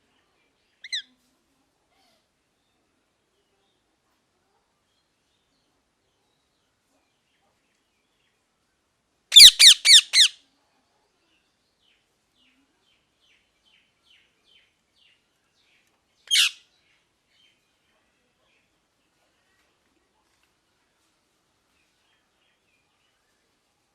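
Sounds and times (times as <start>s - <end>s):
parrot squawking: 9.3s - 10.4s, 16.3s - 16.6s.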